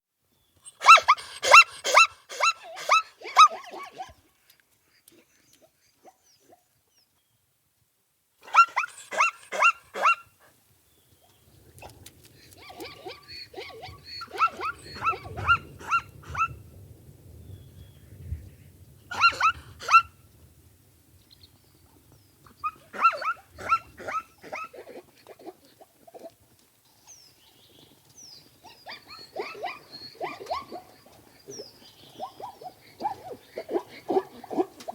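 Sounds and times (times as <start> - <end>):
baby zebra yelping calls: 12.6 - 16.5.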